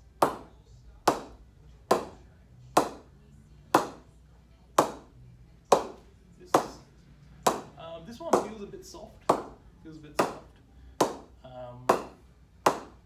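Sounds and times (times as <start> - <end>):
cricket bat knocks: 7.5 - 7.8, 10.2 - 13.0.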